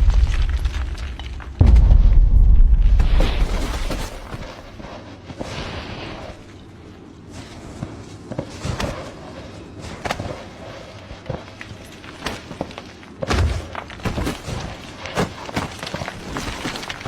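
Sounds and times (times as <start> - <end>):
irregular thuds and knocks: 0.0 - 4.8.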